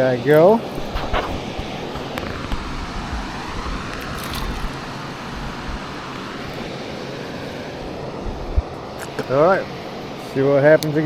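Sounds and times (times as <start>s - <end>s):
water roaring through spillway: 0.0s - 11.0s.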